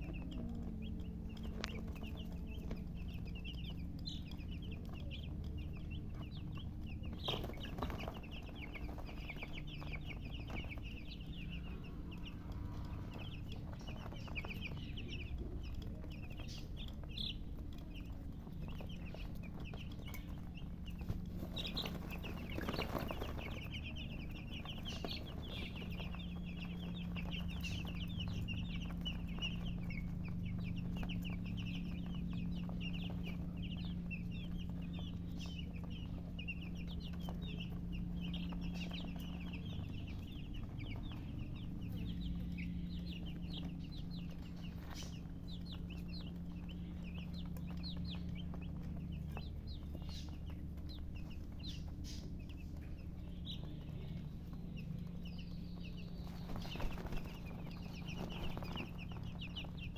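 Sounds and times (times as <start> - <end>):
baby chicks peeping: 0.0 - 59.9
steady low hum: 0.0 - 59.9.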